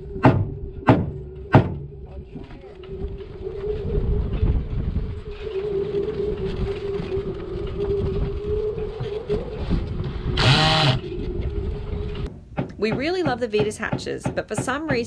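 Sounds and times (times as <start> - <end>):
harsh whine: 0.0 - 12.3
low rumble: 0.0 - 12.3.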